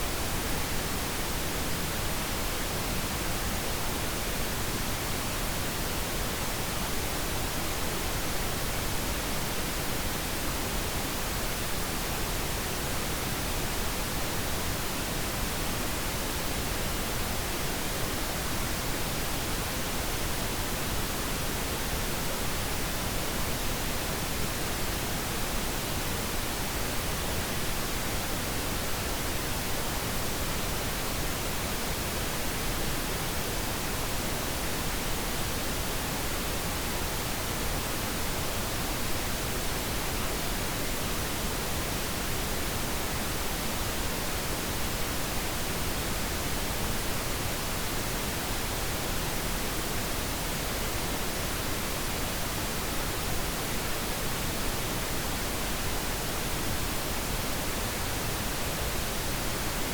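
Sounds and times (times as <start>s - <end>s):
steady pink noise hiss: 0.0s - 59.9s.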